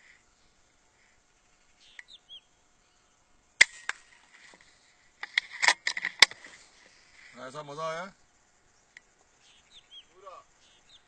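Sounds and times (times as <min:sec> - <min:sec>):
bird chirps: 0:00.0 - 0:03.2, 0:08.2 - 0:11.0
air rifle shot: 0:03.6 - 0:04.2
clicks and rustling: 0:03.6 - 0:07.4.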